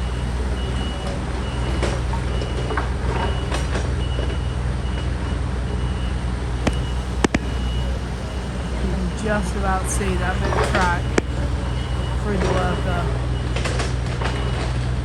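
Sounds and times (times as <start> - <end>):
heavy engine droning: 6.0 - 14.6
sharp knocks: 6.7 - 8.0.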